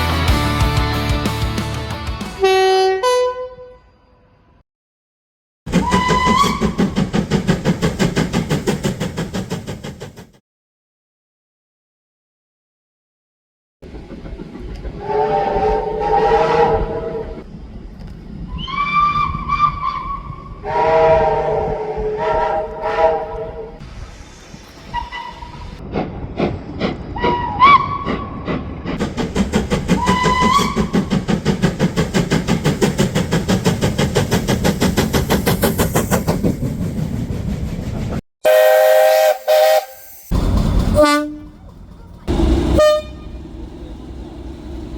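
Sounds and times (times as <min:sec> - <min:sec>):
rapid beats of moving train: 0:00.0 - 0:02.5, 0:05.7 - 0:10.4, 0:13.8 - 0:18.5, 0:23.8 - 0:44.9
high train whistle: 0:02.4 - 0:04.3, 0:05.7 - 0:06.9, 0:15.0 - 0:17.4, 0:18.5 - 0:23.8, 0:27.2 - 0:28.2, 0:30.0 - 0:31.1, 0:38.4 - 0:40.3, 0:40.9 - 0:41.6, 0:42.3 - 0:43.5
multi-note train horn blasts: 0:02.4 - 0:04.4, 0:15.0 - 0:17.4, 0:20.6 - 0:23.8, 0:38.4 - 0:40.3, 0:41.0 - 0:41.5, 0:42.3 - 0:43.5.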